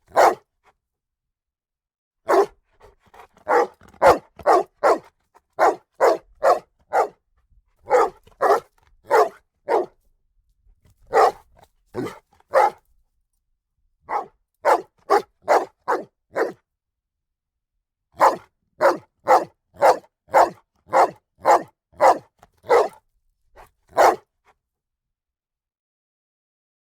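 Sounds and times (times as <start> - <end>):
dog barking: 0.1 - 0.5, 2.3 - 7.2, 7.8 - 10.0, 11.1 - 12.8, 14.1 - 16.6, 18.2 - 23.0, 23.6 - 24.3.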